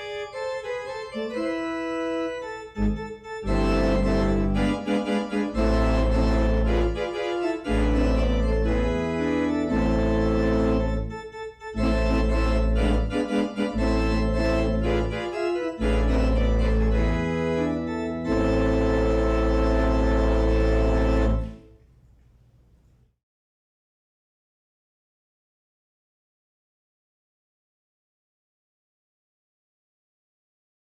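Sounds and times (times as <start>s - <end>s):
church organ playing chords: 0.0s - 21.7s.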